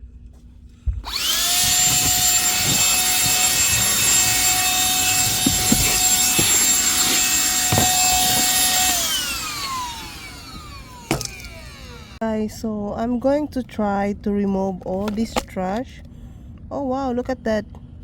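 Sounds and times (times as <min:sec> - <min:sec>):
handheld vacuum whining: 0:01.0 - 0:12.2
vacuum motor spinning down: 0:01.0 - 0:12.2.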